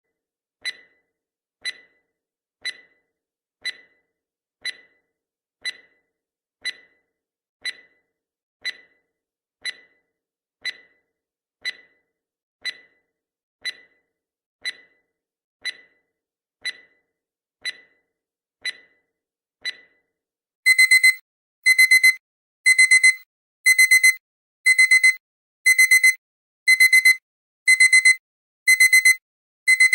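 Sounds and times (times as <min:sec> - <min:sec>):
digital alarm clock beeping: 0:00.6 - 0:05.0, 0:05.6 - 0:06.0, 0:06.6 - 0:07.0, 0:07.6 - 0:09.0, 0:09.6 - 0:10.0, 0:10.6 - 0:11.0, 0:11.6 - 0:12.0, 0:12.6 - 0:14.0, 0:14.6 - 0:16.0, 0:16.6 - 0:17.0, 0:17.6 - 0:18.0, 0:18.6 - 0:19.0, 0:19.6 - 0:20.0, 0:20.7 - 0:29.9
timer ticking: 0:00.6 - 0:20.0, 0:20.7 - 0:29.9.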